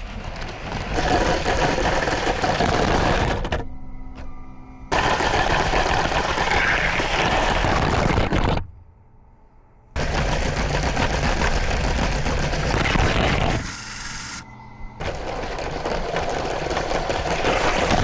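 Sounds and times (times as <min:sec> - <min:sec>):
small electric motor hum: 0:10.0 - 0:18.0.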